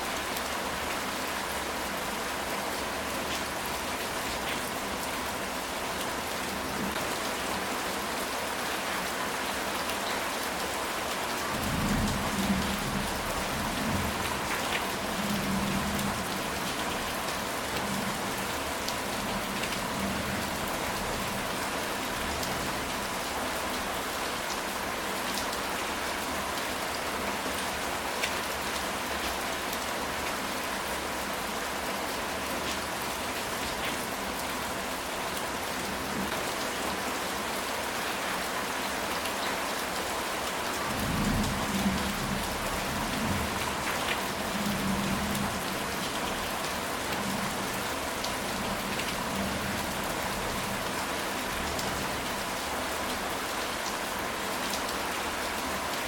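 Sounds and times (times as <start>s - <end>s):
rain on a tile roof: 0.0s - 56.0s.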